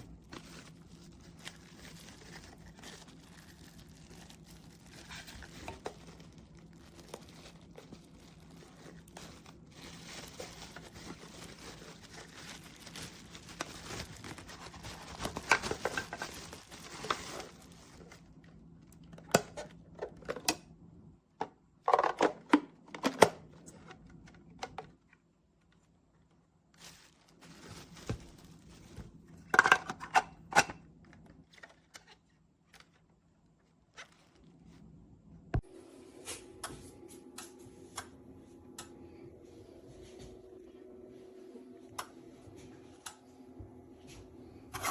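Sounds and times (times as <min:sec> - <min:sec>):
soft rustling and scraping: 0:00.0 - 0:18.3, 0:26.8 - 0:29.5, 0:31.5 - 0:34.9.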